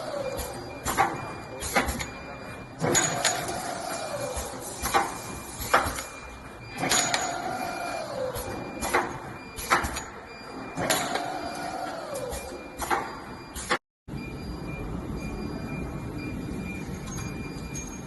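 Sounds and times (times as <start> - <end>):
machine clacks and knocks: 0.2 - 7.5, 8.4 - 10.2.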